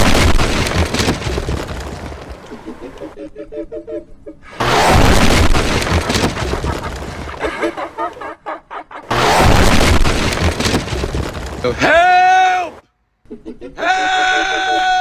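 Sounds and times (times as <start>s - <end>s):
loud explosion booms: 0.0s - 2.4s, 4.6s - 7.4s, 9.1s - 11.8s.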